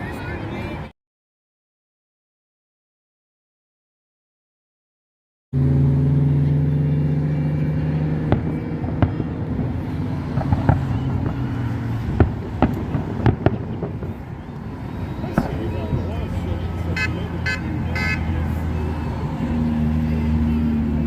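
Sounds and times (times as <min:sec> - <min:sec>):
vehicle engine hum: 0:05.6 - 0:21.0
fireworks bursting: 0:08.3 - 0:17.3.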